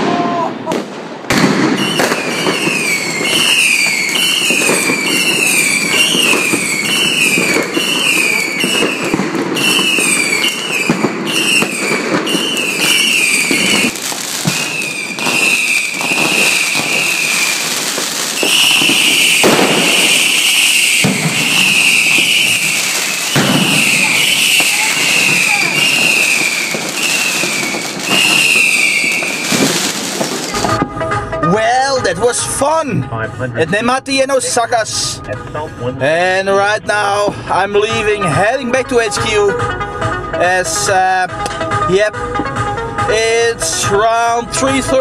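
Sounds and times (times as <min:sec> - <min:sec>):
firework crackling and popping: 0:00.0 - 0:30.9
whistling firework shots: 0:00.7 - 0:30.8
long steady firework whistles: 0:01.1 - 0:30.8.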